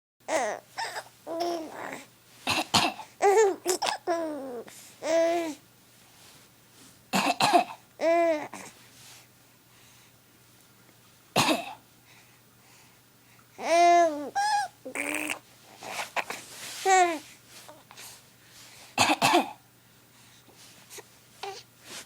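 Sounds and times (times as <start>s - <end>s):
person coughing: 2.5s - 3.1s, 7.1s - 7.8s, 11.4s - 11.8s, 19.0s - 19.6s.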